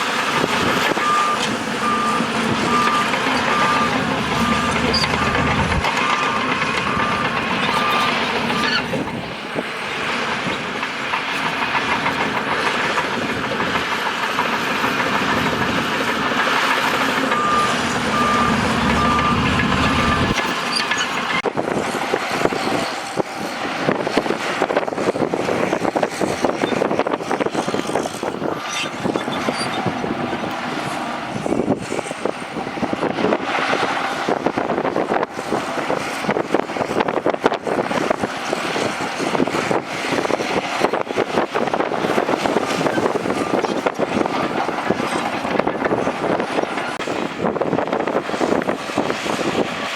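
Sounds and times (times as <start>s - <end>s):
bulldozer diesel engine running: 0.0s - 49.9s
tracks clattering and crunching: 0.0s - 49.9s
reversing alarm beeping: 0.8s - 9.0s, 17.2s - 20.5s.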